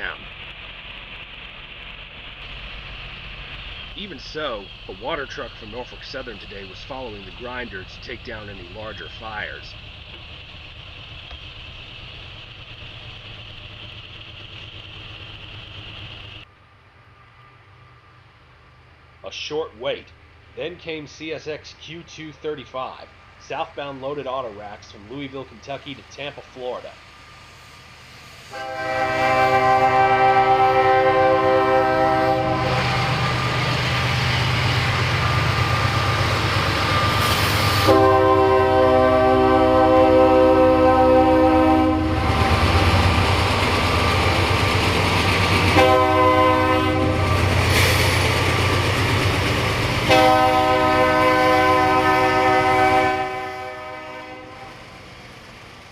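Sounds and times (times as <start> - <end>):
locomotive engine rumble: 0.0 - 16.6, 22.2 - 55.9
machine engine low rumble: 0.0 - 16.9
passing train rushing: 0.0 - 55.9
locomotive air horn chord: 28.5 - 33.5, 37.7 - 43.0, 45.7 - 47.4, 50.1 - 54.8.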